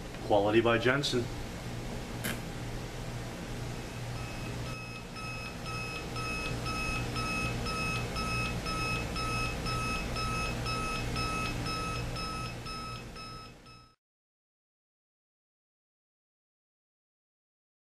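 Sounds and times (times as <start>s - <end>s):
alarm clock beeping: 4.2s - 14.0s.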